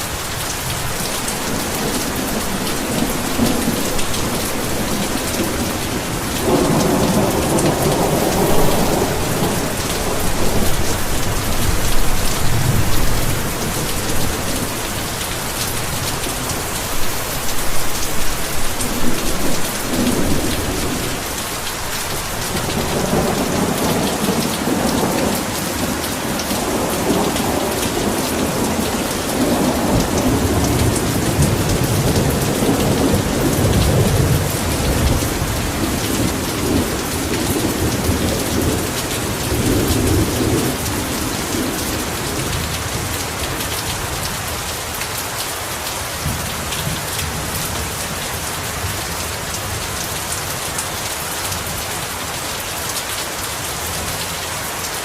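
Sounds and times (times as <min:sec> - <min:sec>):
heavy rain falling: 0:00.0 - 0:55.0
rolling thunder rumble: 0:00.9 - 0:16.7.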